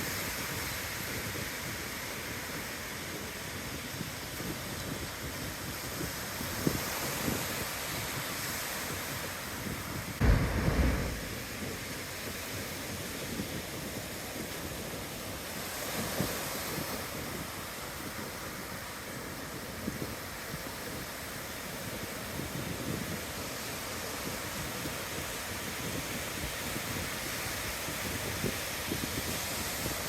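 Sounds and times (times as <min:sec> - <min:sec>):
ocean surf on beach: 0:00.0 - 0:30.0
wind buffeting microphone: 0:03.1 - 0:15.1.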